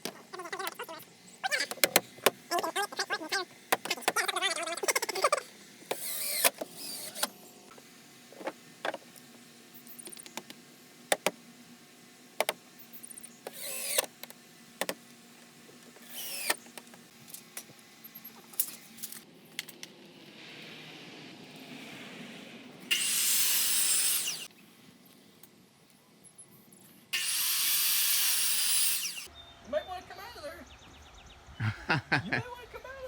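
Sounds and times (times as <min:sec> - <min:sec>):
knocks and clicks: 0:01.6 - 0:02.4.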